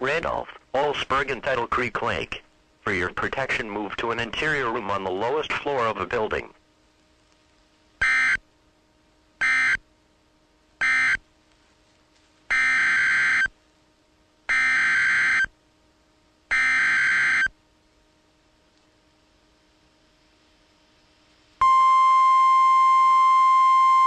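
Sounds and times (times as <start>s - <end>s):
harsh buzzing digital data bursts: 8.0s - 8.4s, 9.4s - 9.8s, 10.8s - 11.2s, 12.5s - 13.6s, 14.5s - 15.5s, 16.5s - 17.6s.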